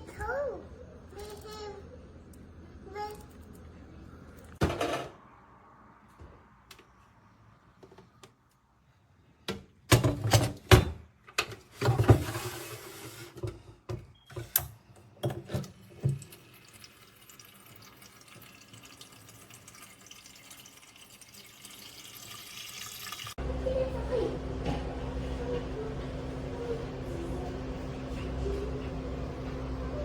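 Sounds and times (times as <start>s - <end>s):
water trickling: 16.2s - 23.4s.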